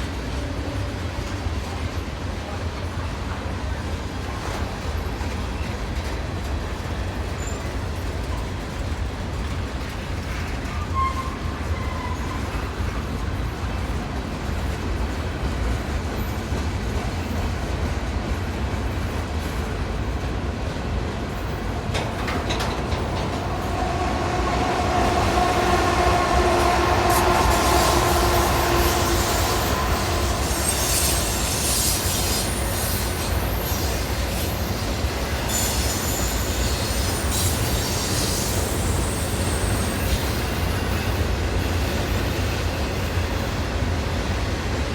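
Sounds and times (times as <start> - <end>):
freight train rumbling: 0.0 - 44.9
wheels clicking over rail joints: 21.5 - 24.4
high scratchy wheel squeal: 23.4 - 41.4.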